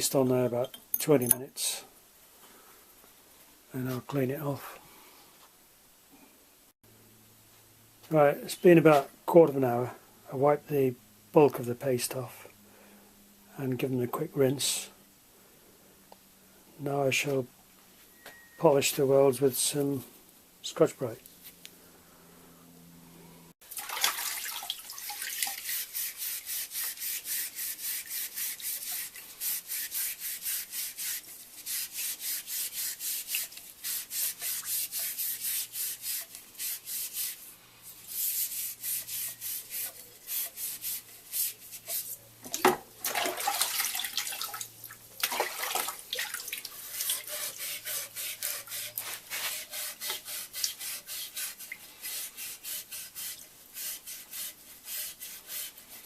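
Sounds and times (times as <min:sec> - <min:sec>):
abrasive pad rubbing on steel: 0:25.6 - 0:42.3, 0:46.8 - 0:56.0.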